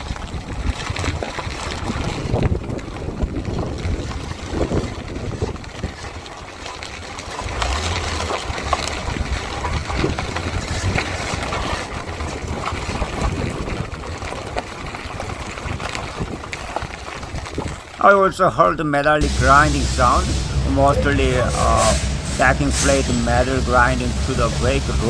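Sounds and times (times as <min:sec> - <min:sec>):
road noise: 0:00.0 - 0:25.0
vehicle running: 0:01.1 - 0:17.1, 0:19.2 - 0:25.0
metallic brake grinding: 0:04.0 - 0:13.8, 0:19.2 - 0:25.0.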